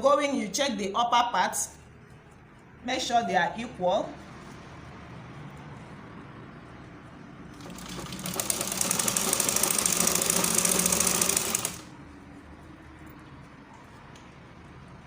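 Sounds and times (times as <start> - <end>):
sewing machine stitching: 7.5 - 11.9.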